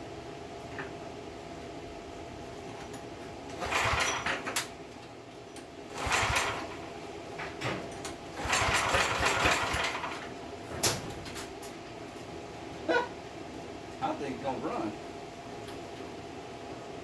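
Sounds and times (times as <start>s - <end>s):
small gas engine turning over: 3.6s - 4.6s, 5.9s - 6.8s, 8.4s - 10.3s.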